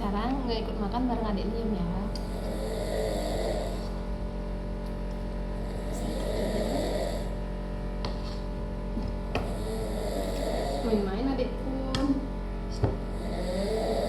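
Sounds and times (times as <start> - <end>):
steady electrical hum: 0.0 - 14.0
person snoring: 2.2 - 4.0, 5.5 - 7.4, 9.4 - 11.1, 13.1 - 14.0.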